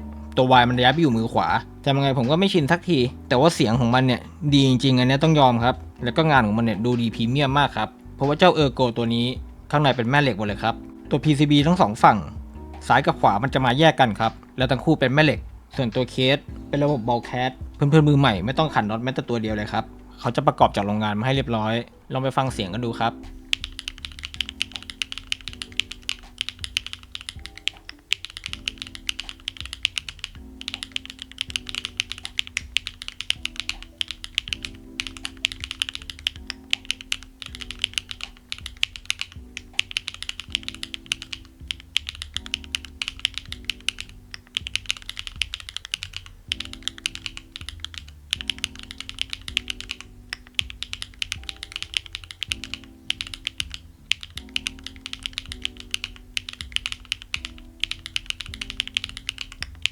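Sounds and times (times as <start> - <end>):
soft background music: 0.0 - 59.9
mechanical keyboard typing: 23.1 - 59.9.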